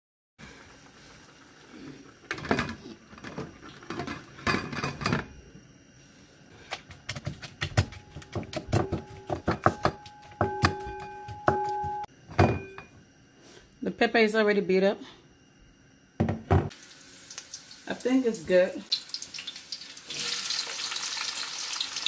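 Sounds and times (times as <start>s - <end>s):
pestle grinding in mortar: 6.7s - 11.9s
pestle striking mortar: 7.0s - 12.0s.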